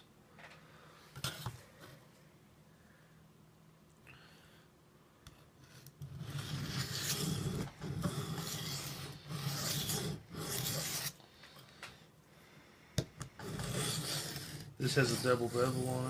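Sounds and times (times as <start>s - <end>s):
knife rasping on sharpening stone: 5.7s - 11.2s, 13.4s - 16.0s.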